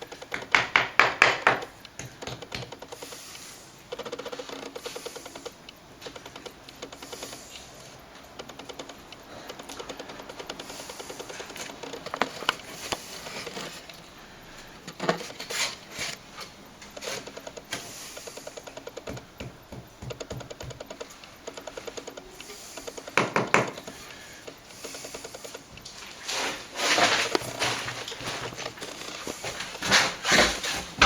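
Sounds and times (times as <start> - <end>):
sharp knocks: 0.2 - 2.8, 18.8 - 21.0, 23.1 - 23.8
scraping plaster: 15.0 - 17.4, 26.0 - 31.0.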